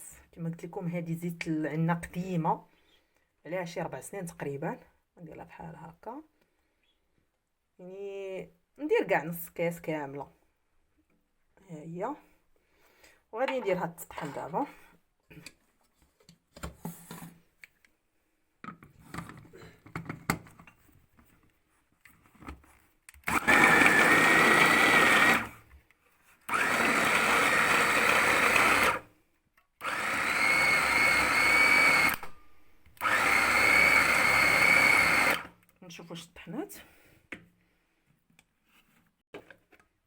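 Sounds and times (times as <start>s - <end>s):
electric blender whining: 23.2s - 25.6s, 26.5s - 29.1s, 29.8s - 32.3s, 33.0s - 35.5s.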